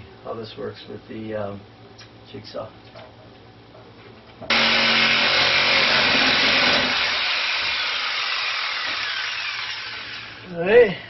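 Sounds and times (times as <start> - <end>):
jigsaw motor hum: 4.5 - 10.4
jigsaw sawing through metal: 4.5 - 10.4.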